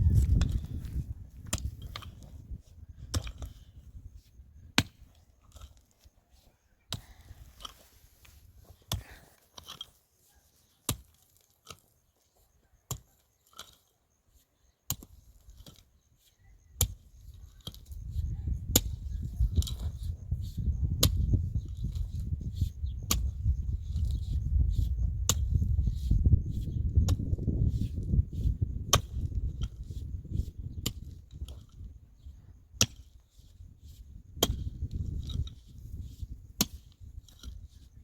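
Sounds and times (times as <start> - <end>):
low rumble: 0.0 - 1.2.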